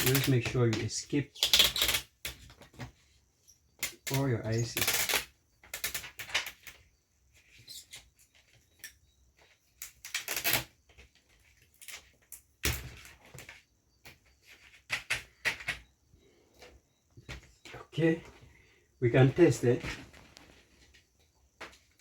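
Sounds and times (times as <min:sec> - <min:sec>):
hands clicking and knocking parts: 0:00.0 - 0:02.9, 0:08.8 - 0:15.9.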